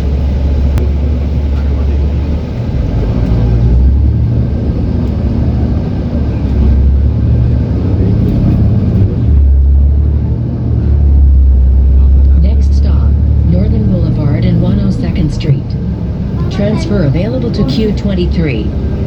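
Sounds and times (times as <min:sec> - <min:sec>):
bus engine drone: 0:00.0 - 0:19.0
road noise: 0:00.0 - 0:19.0.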